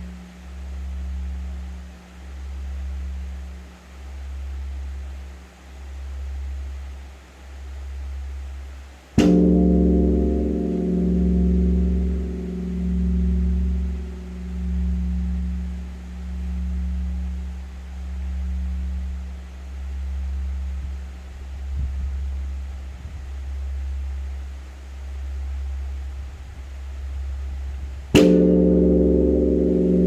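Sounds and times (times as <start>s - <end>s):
large temple bell ringing: 9.2s - 19.4s, 28.2s - 30.0s.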